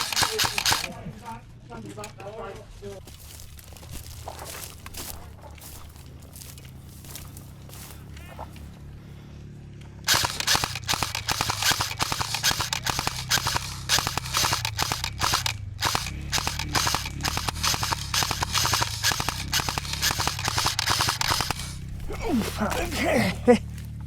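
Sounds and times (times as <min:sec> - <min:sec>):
airsoft gunfire: 0:00.0 - 0:01.0, 0:10.1 - 0:23.3.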